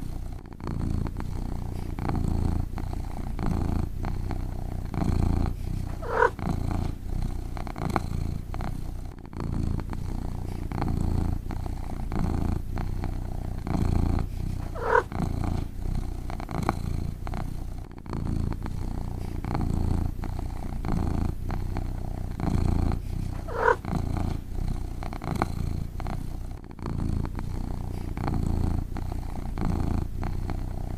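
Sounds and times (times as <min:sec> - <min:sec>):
cat purring: 0:00.0 - 0:30.9.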